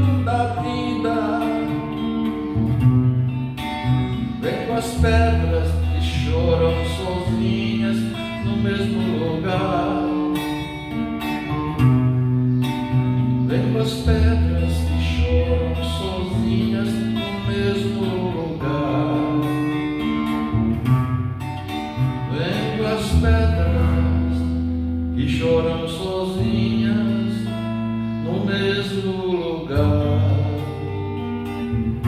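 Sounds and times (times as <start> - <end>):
bass line: 0.0 - 19.8
acoustic guitar: 0.0 - 32.0.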